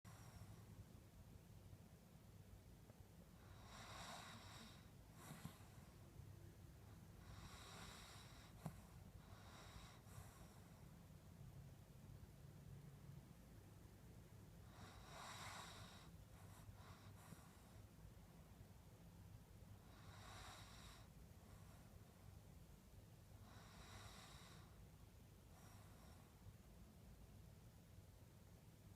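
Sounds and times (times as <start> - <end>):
dog breathing in sleep: 0.1 - 0.7, 3.4 - 6.0, 7.2 - 10.9, 14.6 - 17.9, 19.8 - 21.9, 23.4 - 24.9, 25.5 - 26.4.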